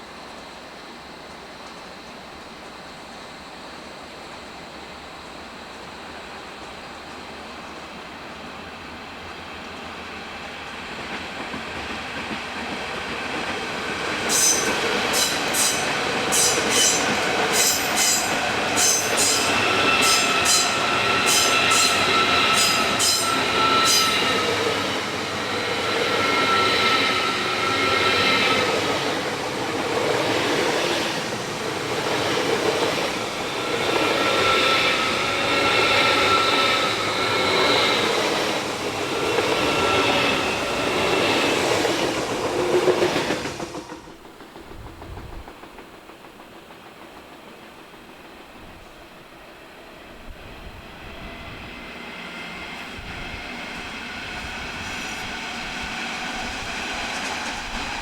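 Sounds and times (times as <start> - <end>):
train running past: 0.0 - 58.0
wheel squeal: 14.3 - 28.9, 33.5 - 38.3, 39.0 - 41.6.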